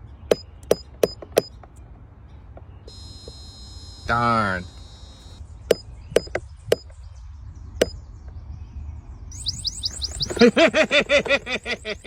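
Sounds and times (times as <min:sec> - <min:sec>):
sharp knocking raps: 0:00.3 - 0:01.6, 0:05.7 - 0:07.0.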